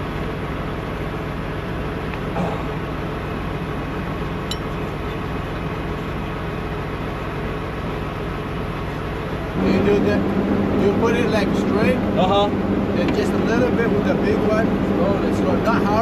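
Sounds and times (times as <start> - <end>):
truck engine idling: 0.0 - 16.0.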